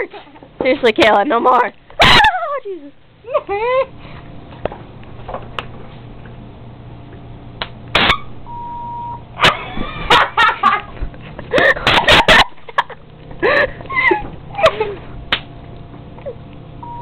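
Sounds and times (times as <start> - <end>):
censor beep: 8.5 - 9.2, 16.8 - 17.0.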